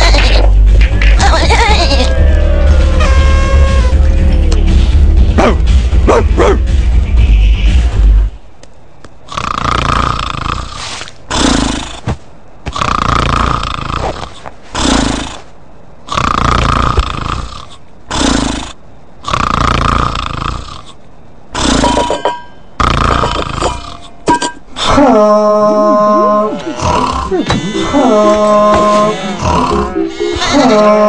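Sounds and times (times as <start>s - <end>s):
cartoon snoring: 9.3s - 12.0s, 12.7s - 15.5s, 16.1s - 21.9s, 22.8s - 23.8s, 25.6s - 31.0s.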